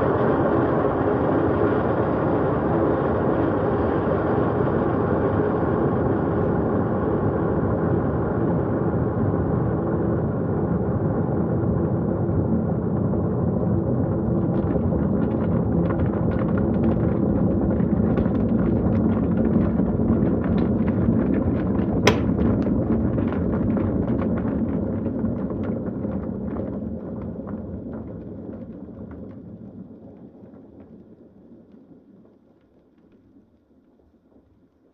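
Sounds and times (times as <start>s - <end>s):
kettle water bubbling: 14.5s - 25.3s.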